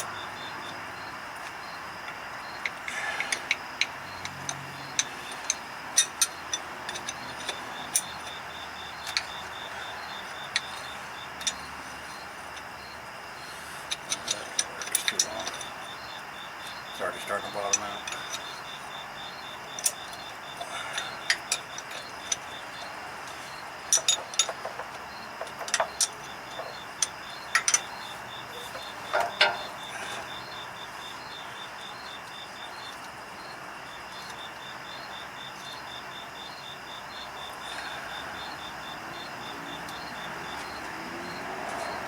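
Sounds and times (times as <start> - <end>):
insects chirping: 0.0 - 42.0
metal clinks of wrenches: 13.9 - 15.8, 17.0 - 18.6, 23.9 - 30.4.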